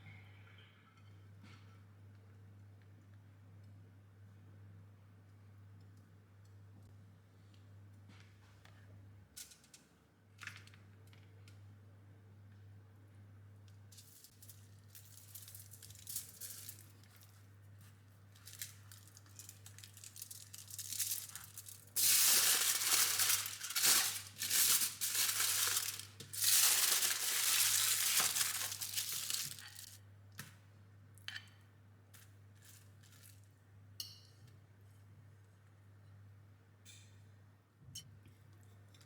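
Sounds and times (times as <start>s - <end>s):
rustling and crinkling: 14.0s - 30.0s.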